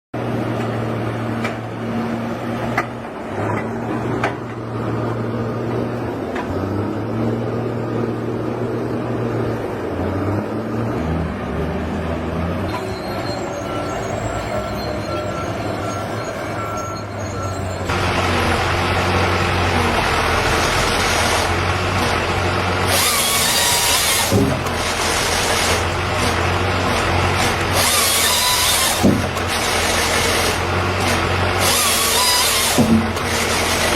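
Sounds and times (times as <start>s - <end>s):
rushing noise of cutting or sanding: 20.6s - 33.9s
power tool motor humming: 22.8s - 33.9s.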